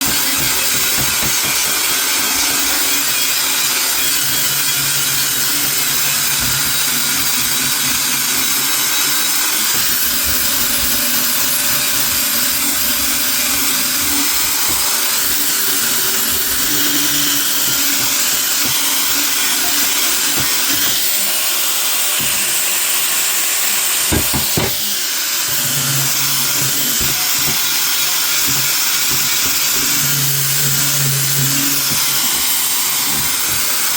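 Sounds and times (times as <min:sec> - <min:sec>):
power tool running on metal: 0:00.0 - 0:33.9
short knock: 0:24.1 - 0:24.8.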